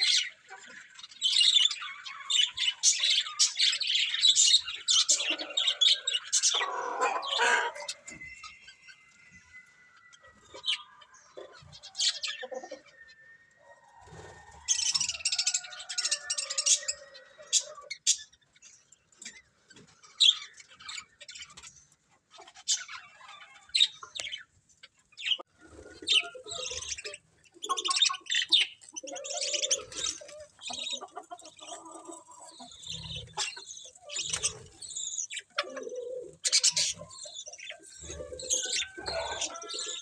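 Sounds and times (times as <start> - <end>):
budgerigars chirping: 26.0 - 40.0.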